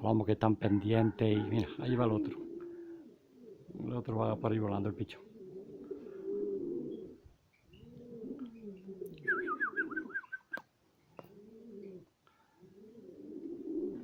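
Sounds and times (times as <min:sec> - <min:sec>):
pigeons cooing: 0:00.5 - 0:14.0
small bird chirping: 0:06.8 - 0:12.0.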